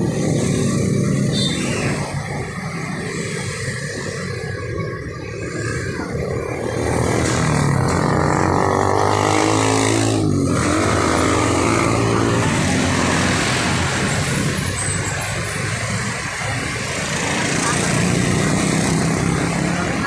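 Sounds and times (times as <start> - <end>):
vehicle engine passing: 5.9 - 20.0.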